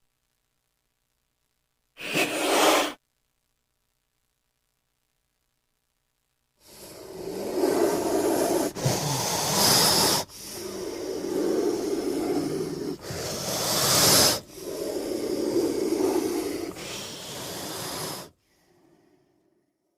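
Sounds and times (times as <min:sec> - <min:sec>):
snake hissing: 0:02.0 - 0:03.0, 0:06.6 - 0:19.2.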